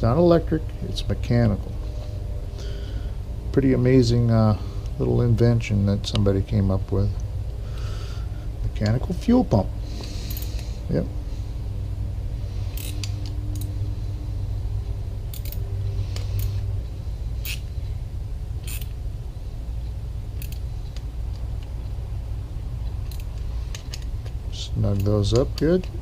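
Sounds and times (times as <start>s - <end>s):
steady low hum: 0.0s - 26.0s
hand tools and metal parts clicking: 9.9s - 10.8s, 12.6s - 13.8s, 15.2s - 16.7s, 17.4s - 17.7s, 18.6s - 19.0s, 20.3s - 21.9s, 22.8s - 26.0s.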